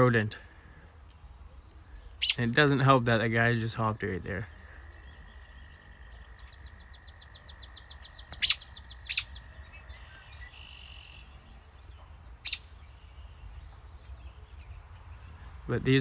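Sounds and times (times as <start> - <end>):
sharp bird chip calls: 0.6 - 2.8, 4.5 - 13.6
small bird trilling: 2.2 - 2.5, 5.0 - 11.3, 12.4 - 12.8.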